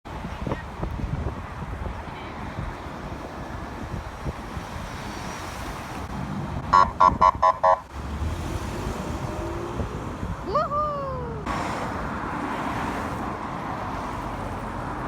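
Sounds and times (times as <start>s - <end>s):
traffic rumble: 0.0s - 15.0s
wind: 0.0s - 15.0s
air horn blasts: 6.8s - 7.8s.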